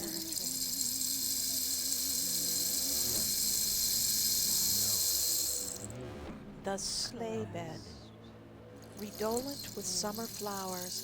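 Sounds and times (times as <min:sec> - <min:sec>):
steady bright hiss: 0:00.0 - 0:05.6
low wavering hum: 0:00.0 - 0:11.0.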